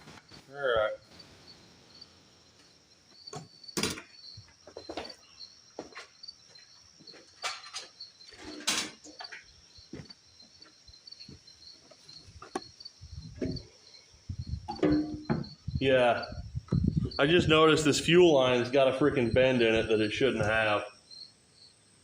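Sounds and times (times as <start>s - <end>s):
insects chirping: 0.0s - 22.0s.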